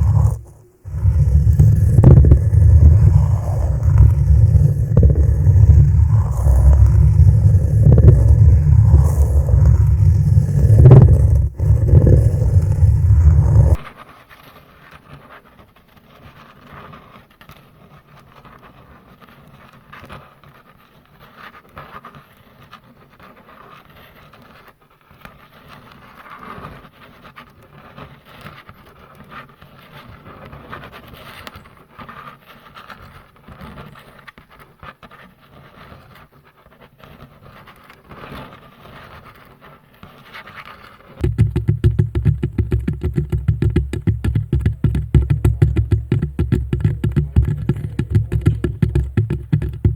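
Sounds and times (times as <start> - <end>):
hands rubbing on microphone: 0.0 - 13.8, 41.2 - 49.9.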